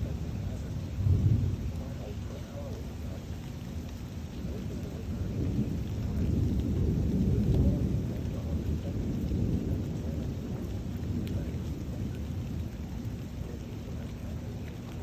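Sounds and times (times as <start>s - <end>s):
rain hissing: 0.0s - 15.0s
rolling thunder: 0.0s - 15.0s.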